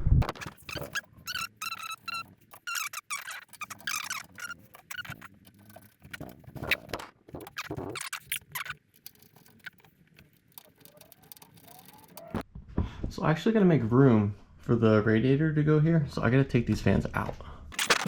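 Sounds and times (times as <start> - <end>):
small parts clicking and scraping: 0.2 - 12.4, 17.7 - 18.0
screwdriver turning screws: 0.4 - 12.4, 17.8 - 18.0.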